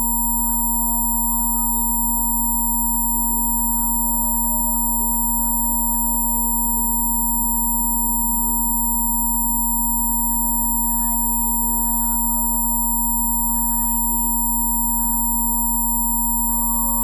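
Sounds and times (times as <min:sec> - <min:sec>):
steady electronic sine tones: 0:00.0 - 0:17.0.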